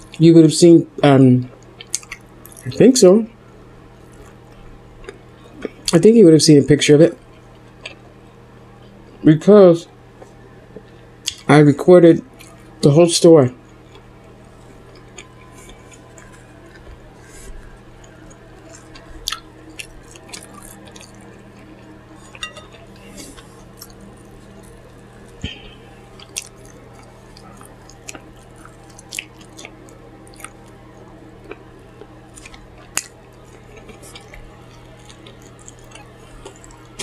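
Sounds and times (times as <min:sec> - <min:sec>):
chewing food: 0:00.0 - 0:00.2, 0:01.4 - 0:02.8, 0:03.9 - 0:06.1, 0:07.1 - 0:09.2, 0:12.2 - 0:12.8, 0:13.5 - 0:37.0
steady low hum: 0:00.0 - 0:37.0
wet mouth clicks and lip smacks: 0:01.8 - 0:02.6.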